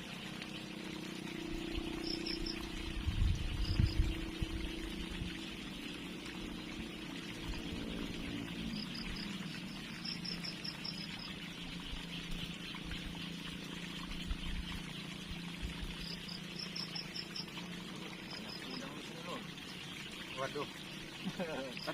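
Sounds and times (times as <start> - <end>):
river water trickling: 0.0 - 21.9
insects chirping: 1.1 - 5.4, 7.6 - 11.5, 15.8 - 21.9.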